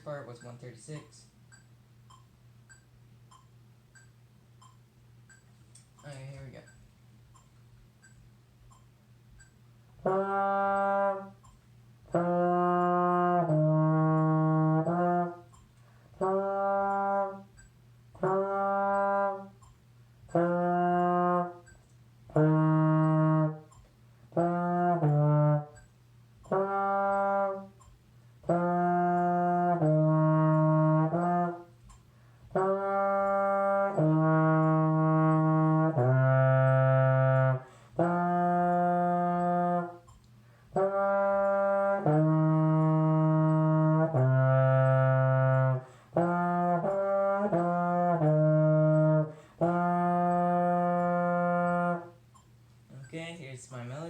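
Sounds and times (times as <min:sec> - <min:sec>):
faint metronome clicking: 0:00.0 - 0:54.0
solo trombone playing: 0:10.0 - 0:25.8, 0:26.4 - 0:52.2.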